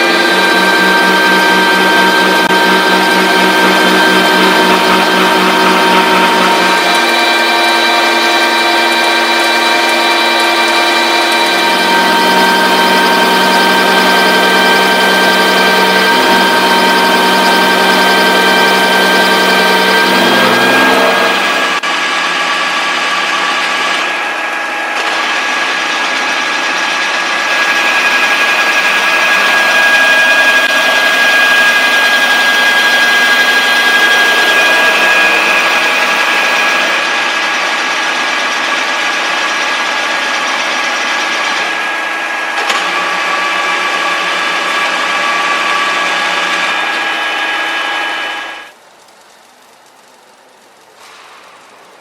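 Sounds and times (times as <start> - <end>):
milling machine whining: 0.0 - 52.0.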